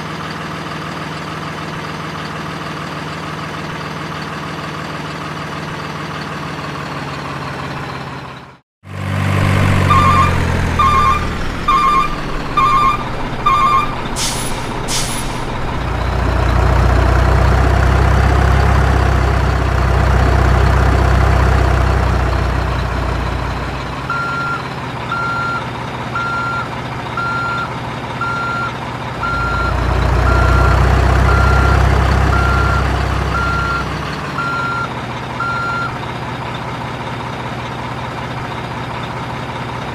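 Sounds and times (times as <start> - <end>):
heavy truck engine running: 0.0 - 39.9
reversing beeps: 9.9 - 14.0, 24.1 - 36.0
air brake hissing: 14.1 - 15.6.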